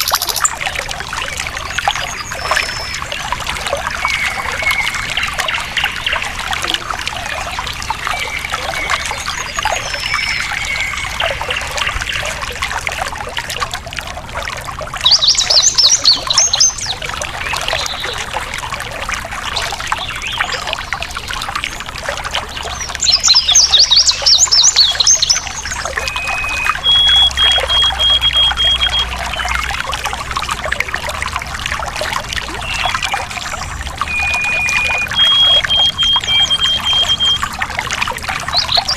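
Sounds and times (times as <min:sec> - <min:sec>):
birds singing and trilling: 0:00.0 - 0:12.6, 0:15.0 - 0:30.1, 0:32.4 - 0:38.9
stream trickling and splashing: 0:00.0 - 0:38.9.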